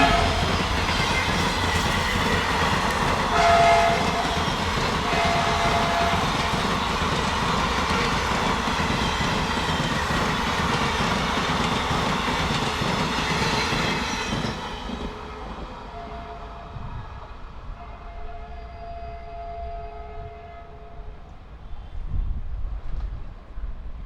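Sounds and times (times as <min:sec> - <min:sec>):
train wheels clattering on rails: 0:00.0 - 0:15.9.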